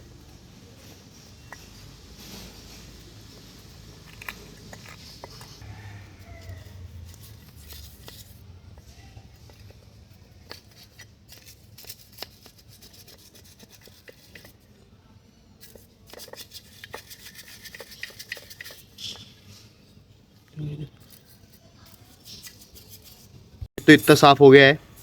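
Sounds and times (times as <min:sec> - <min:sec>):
brush scrubbing a chain: 0:00.0 - 0:14.6, 0:15.6 - 0:19.8.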